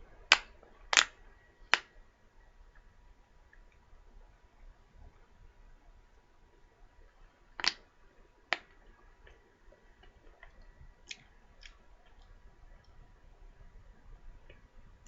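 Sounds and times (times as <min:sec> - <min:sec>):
macaron crisp clicks: 0:07.6 - 0:07.8.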